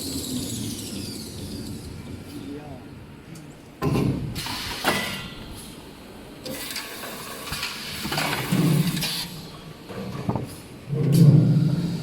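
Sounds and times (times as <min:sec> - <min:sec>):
machine hissing clatter: 0:04.4 - 0:05.8, 0:06.4 - 0:09.6.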